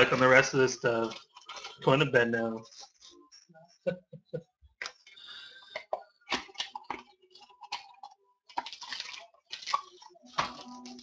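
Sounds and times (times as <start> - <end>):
foil wrapper crinkling: 0.0 - 2.0, 6.3 - 11.0.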